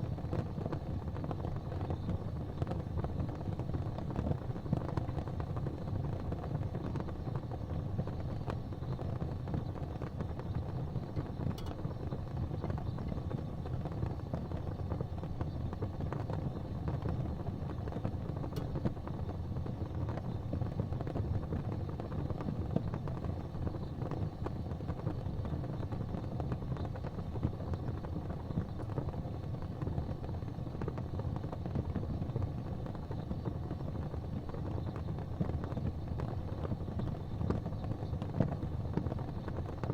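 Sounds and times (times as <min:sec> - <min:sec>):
gas flames rumbling: 0:00.0 - 0:39.9
faint ticks: 0:11.1 - 0:14.6.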